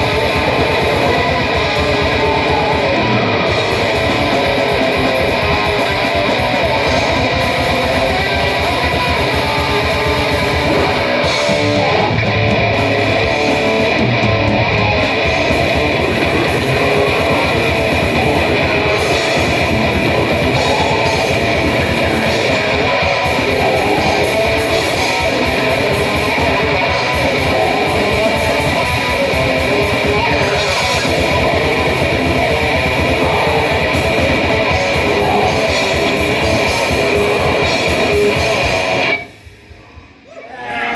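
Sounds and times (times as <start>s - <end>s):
heavy band with electric guitar: 0.0s - 40.9s.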